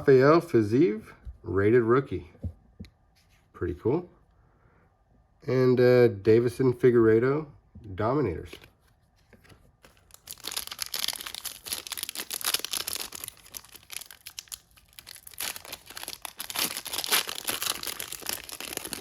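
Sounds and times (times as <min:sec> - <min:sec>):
foil wrapper tearing and crinkling: 0:09.8 - 0:19.0.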